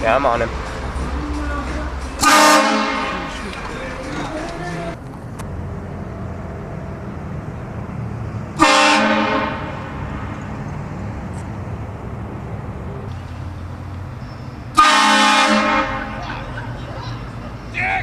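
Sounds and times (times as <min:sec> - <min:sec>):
low rumble of car: 0:00.0 - 0:18.0
train horn blasting: 0:02.2 - 0:03.4, 0:08.6 - 0:10.1, 0:14.8 - 0:16.2.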